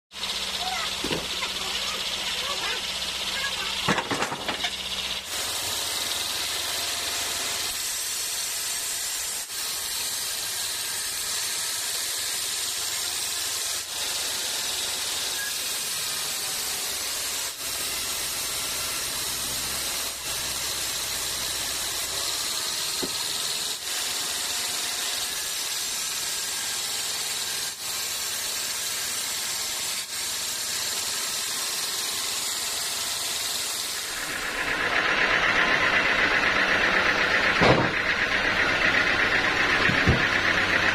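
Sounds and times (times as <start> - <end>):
bandsaw blade cutting log: 0.2 - 40.9
low machine hum: 34.1 - 40.9.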